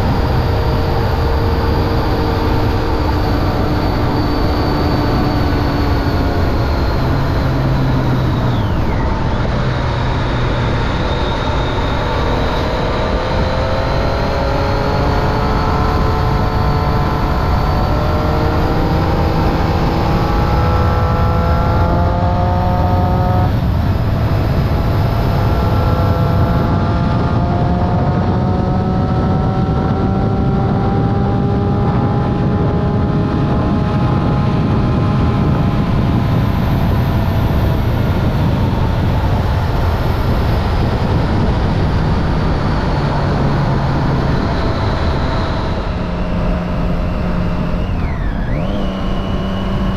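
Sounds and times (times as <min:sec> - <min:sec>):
constant low rumble: 0:00.0 - 0:49.9
gear change: 0:00.0 - 0:49.9
motorcycle engine revving: 0:00.0 - 0:49.9.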